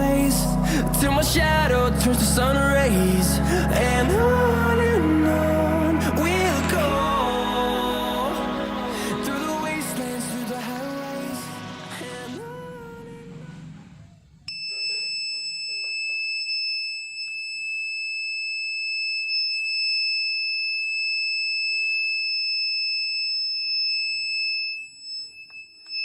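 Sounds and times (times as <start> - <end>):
music: 0.0 - 13.0.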